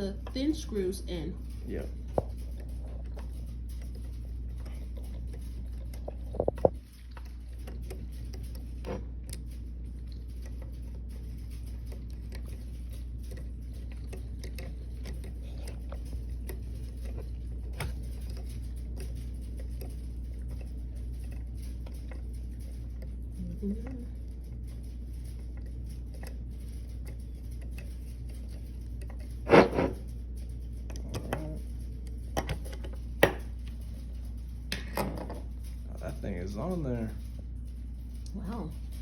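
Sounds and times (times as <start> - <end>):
steady low hum: 0.0 - 39.0
screwdriver clicks and taps on metal: 32.4 - 33.5.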